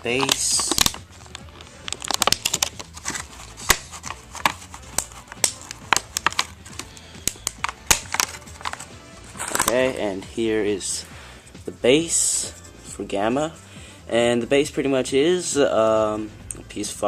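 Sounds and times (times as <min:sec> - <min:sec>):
plastic packaging crinkling and snapping: 0:00.0 - 0:09.8.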